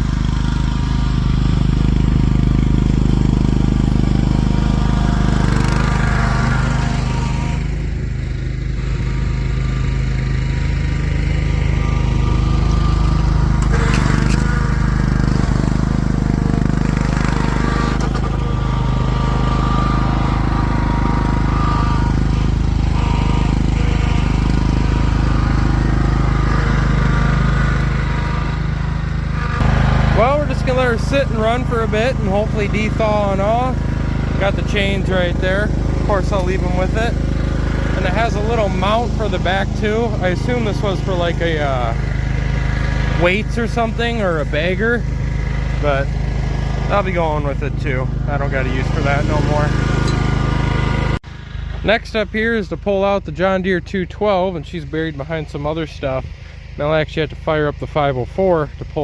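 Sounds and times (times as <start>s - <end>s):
small engine idling: 0.0s - 59.0s.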